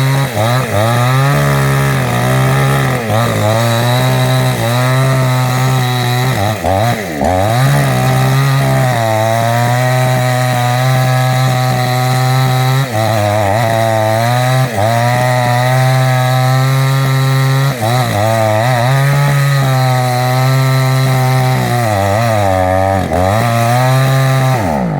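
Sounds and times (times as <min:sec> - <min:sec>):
chainsaw cutting wood: 0:00.0 - 0:24.9.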